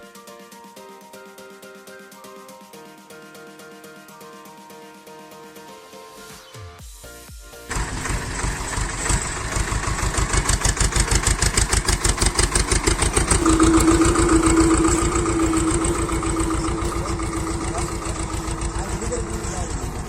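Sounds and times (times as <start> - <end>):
tractor engine running: 7.7 - 20.0
steady whine: 12.1 - 20.0.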